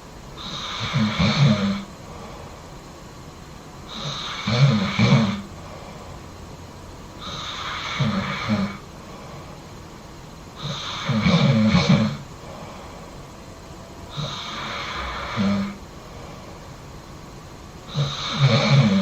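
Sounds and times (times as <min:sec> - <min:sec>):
quiet breathing: 0:00.0 - 0:19.0
person snoring: 0:00.4 - 0:02.4, 0:03.9 - 0:06.2, 0:07.2 - 0:09.5, 0:10.6 - 0:13.1, 0:14.1 - 0:16.5, 0:17.9 - 0:19.0.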